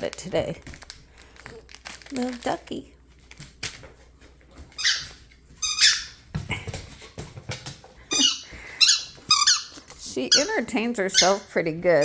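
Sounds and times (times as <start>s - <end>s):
dog toy squeaking: 4.8s - 6.2s, 8.1s - 12.0s.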